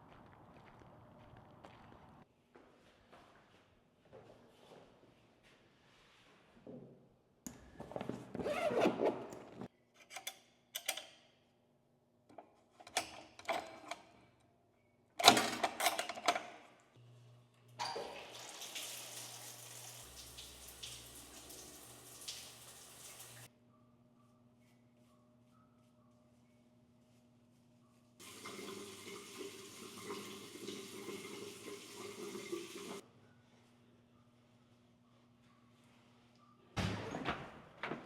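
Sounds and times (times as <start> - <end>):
shower water spray hissing: 18.3 - 23.5.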